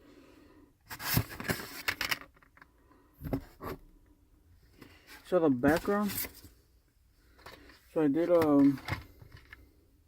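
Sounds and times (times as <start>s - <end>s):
rustling and scraping handling noises: 0.8s - 4.0s, 4.7s - 6.6s, 7.3s - 9.8s.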